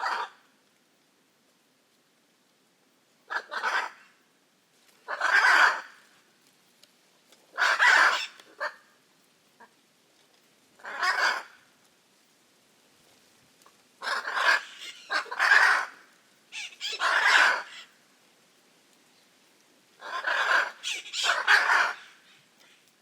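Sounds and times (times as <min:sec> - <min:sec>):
macaw harsh calls: 0:05.1 - 0:05.9, 0:07.6 - 0:08.8, 0:14.0 - 0:18.0, 0:20.0 - 0:22.9.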